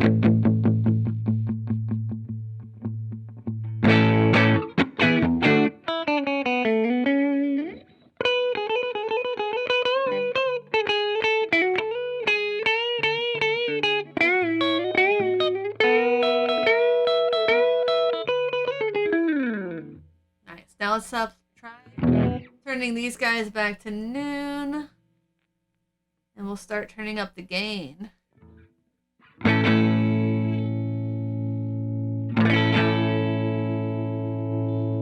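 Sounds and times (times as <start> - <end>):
electric guitar: 0.0 - 20.0, 21.7 - 22.6, 28.4 - 35.0.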